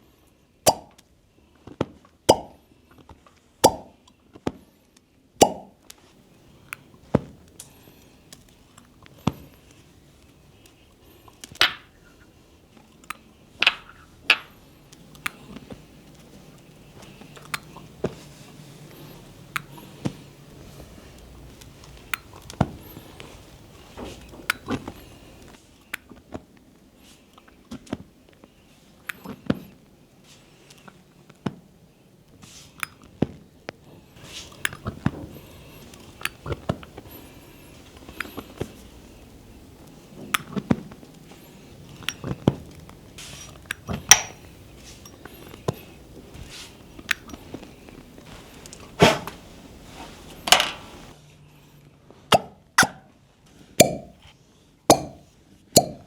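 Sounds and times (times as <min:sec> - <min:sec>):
cups clicking on skin: 0:02.3 - 0:02.6, 0:03.6 - 0:04.0, 0:13.0 - 0:18.2, 0:41.9 - 0:42.8, 0:43.5 - 0:46.0, 0:54.9 - 0:56.0
hands slapping bare skin: 0:03.6 - 0:03.9.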